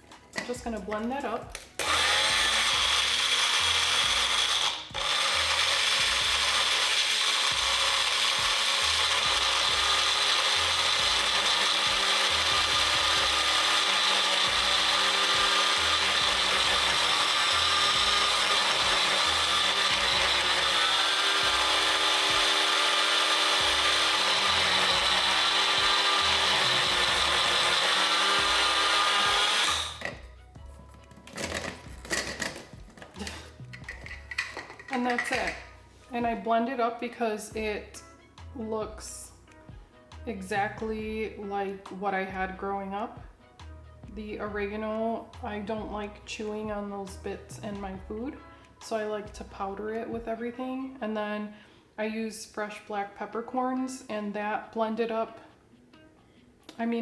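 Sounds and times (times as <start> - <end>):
blender grinding spices: 1.8 - 30.2, 31.2 - 35.6.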